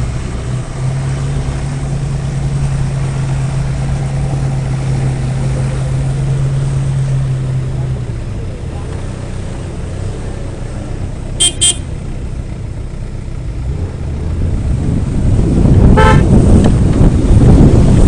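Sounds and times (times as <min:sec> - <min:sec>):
vehicle engine rumbling: 0:00.0 - 0:18.0
horn toots: 0:11.4 - 0:11.9, 0:15.9 - 0:16.4.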